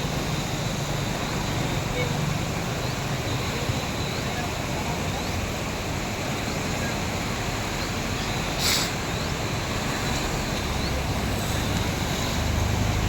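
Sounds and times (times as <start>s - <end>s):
river flowing: 0.0s - 13.0s
brief louder hiss: 8.6s - 9.0s.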